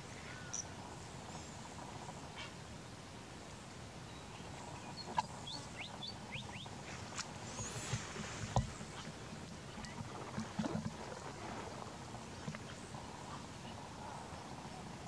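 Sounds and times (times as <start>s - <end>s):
bird warble: 5.1s - 14.3s.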